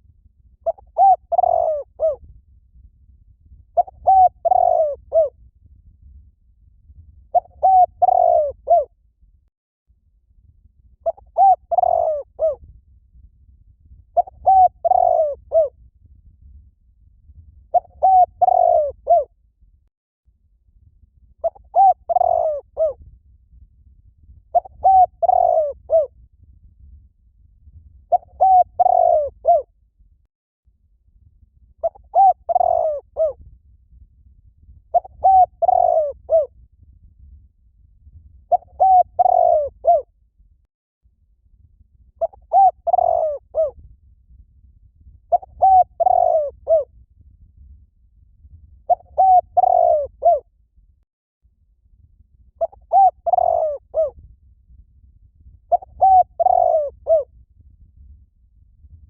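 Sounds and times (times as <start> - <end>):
dove cooing: 0.7 - 2.2, 3.8 - 5.3, 7.4 - 8.9, 11.0 - 12.6, 14.2 - 15.7, 17.8 - 19.3, 21.4 - 23.0, 24.6 - 26.1, 28.1 - 29.6, 31.8 - 33.4, 35.0 - 36.5, 38.5 - 40.0, 42.2 - 43.7, 45.3 - 46.9, 48.9 - 50.4, 52.6 - 54.2, 55.7 - 57.3.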